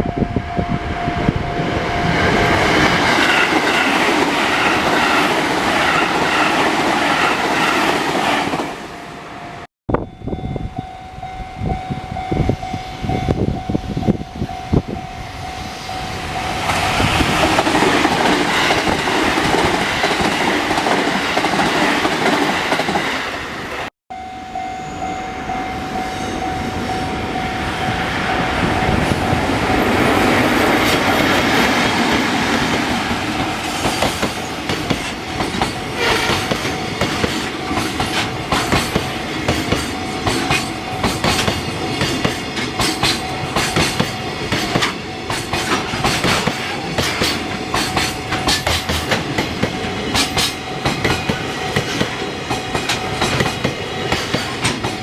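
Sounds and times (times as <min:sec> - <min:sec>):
crossing warning bell: 0:00.0 - 0:07.7, 0:08.5 - 0:21.6, 0:24.1 - 0:55.0
train rushing noise: 0:00.0 - 0:23.9, 0:24.6 - 0:55.0
train wheels clacking: 0:16.6 - 0:23.2, 0:29.6 - 0:55.0.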